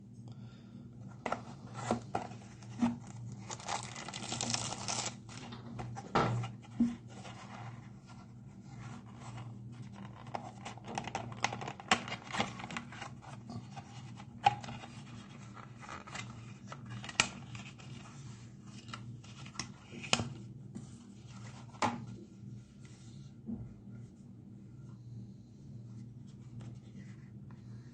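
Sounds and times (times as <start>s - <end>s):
low steady hum: 0.0s - 27.9s
packaging tearing and rustling: 1.9s - 5.5s.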